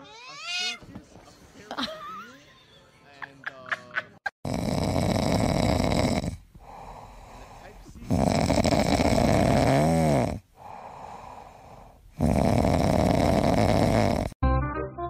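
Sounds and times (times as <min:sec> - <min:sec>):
person snoring: 0:04.4 - 0:14.4.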